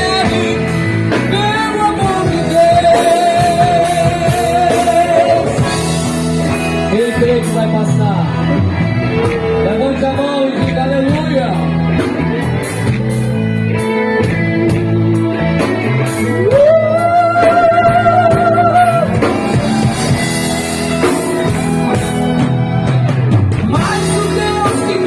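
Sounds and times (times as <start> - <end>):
rock band playing: 0.0 - 25.0.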